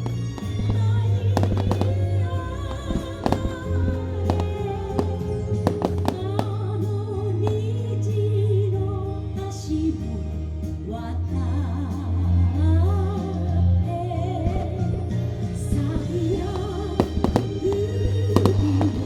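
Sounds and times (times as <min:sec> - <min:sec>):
song with singing over bass: 0:00.0 - 0:19.0
firework bangs: 0:00.4 - 0:06.6, 0:17.0 - 0:19.0.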